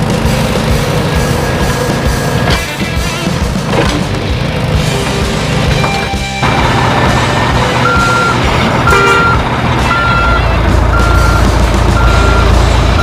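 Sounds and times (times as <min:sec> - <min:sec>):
engine rumble: 0:00.0 - 0:13.0
truck reversing alarm beeping: 0:05.7 - 0:13.0.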